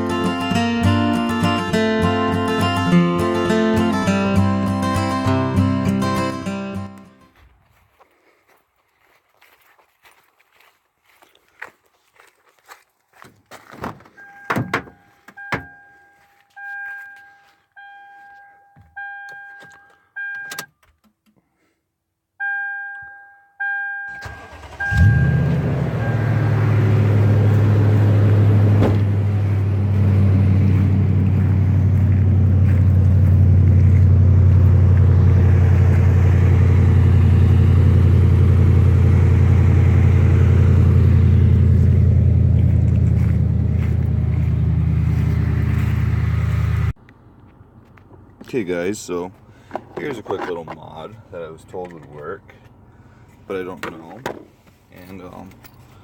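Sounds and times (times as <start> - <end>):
car engine cranking and idling: 13.2 - 17.3, 24.1 - 56.0
dashboard warning chime beeping: 14.2 - 20.8, 22.4 - 27.6.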